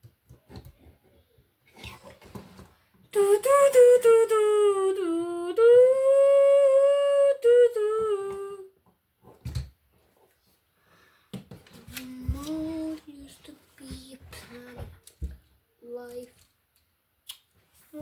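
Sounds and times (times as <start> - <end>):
child humming: 3.2 - 8.7.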